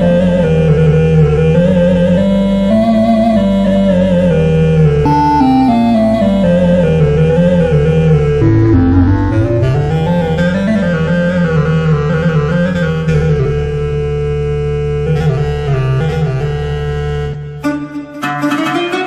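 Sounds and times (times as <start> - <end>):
keyboard melody over held bass: 0.0 - 17.7.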